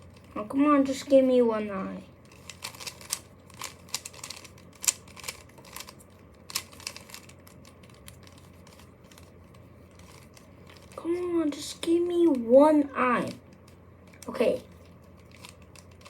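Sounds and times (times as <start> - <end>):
puzzle cube plastic clicks: 2.3 - 9.3, 9.9 - 11.0, 13.2 - 16.0.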